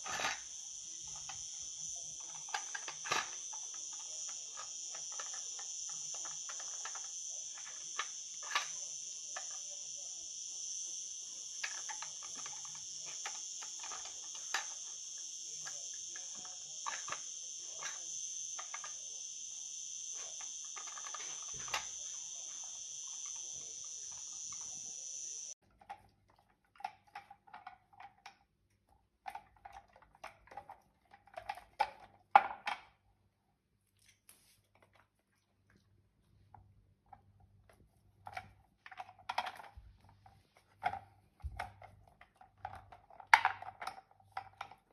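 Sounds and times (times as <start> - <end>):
crickets chirping: 0.0 - 25.6.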